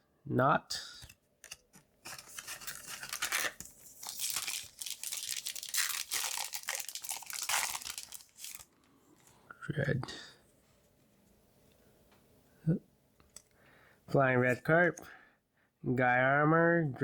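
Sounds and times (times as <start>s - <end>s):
foil wrapper tearing and crinkling: 1.4s - 8.7s.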